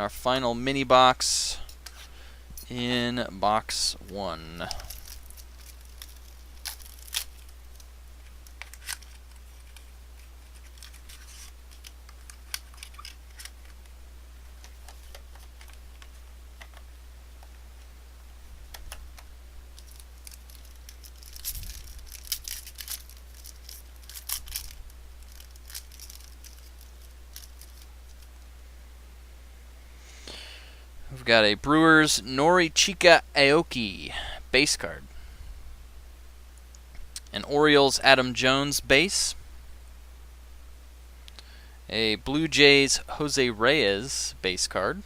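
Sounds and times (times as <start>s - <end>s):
low electrical hum: 0.0s - 45.0s
packaging tearing: 4.6s - 13.9s, 19.8s - 28.3s
cards sliding: 4.7s - 14.0s.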